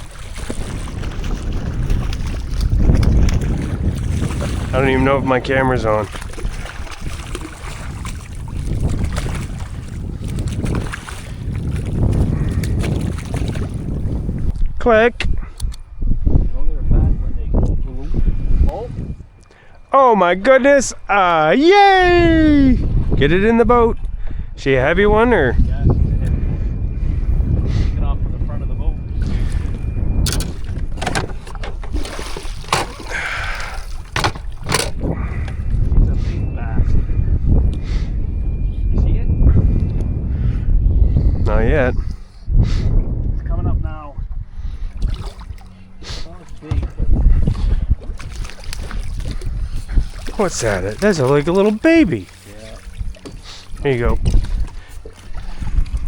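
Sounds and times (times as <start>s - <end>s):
wind rumbling on microphone: 0.0s - 56.0s
sharp knocks against boat: 30.2s - 35.6s, 46.6s - 49.5s.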